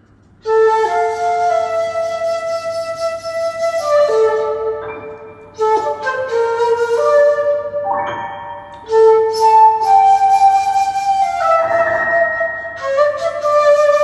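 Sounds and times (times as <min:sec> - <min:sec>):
piano accompaniment: 0:00.4 - 0:14.0
shakuhachi playing held notes: 0:00.4 - 0:14.0.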